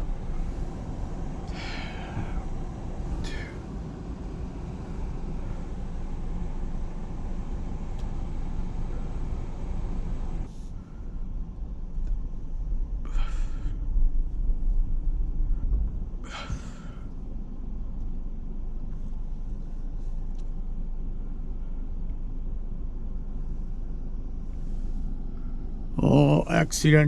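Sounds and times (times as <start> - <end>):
car driving rumble inside cabin: 0.0 - 13.1.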